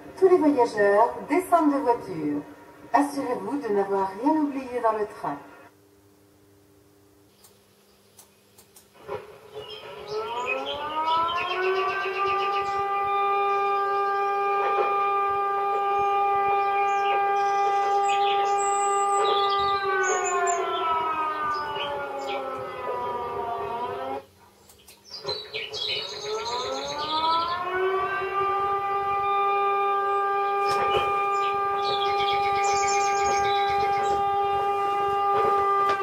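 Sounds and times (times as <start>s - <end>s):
siren-like tone over loudspeakers: 0.0s - 5.7s, 9.0s - 24.3s, 25.2s - 36.0s
faint bird chirps: 30.8s - 34.2s.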